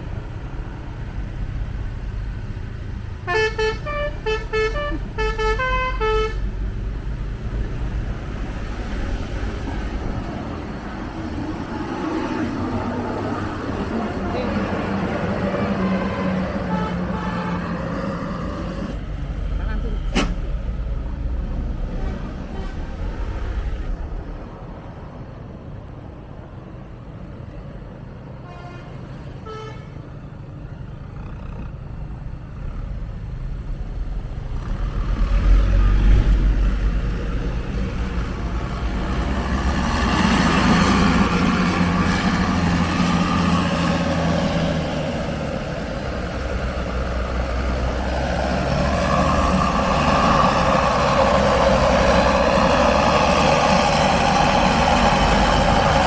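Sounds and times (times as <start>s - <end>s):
bus engine and road noise: 0.0s - 56.0s
multi-tone bus horn: 3.2s - 6.7s, 14.0s - 19.0s, 21.8s - 23.3s, 28.4s - 30.1s.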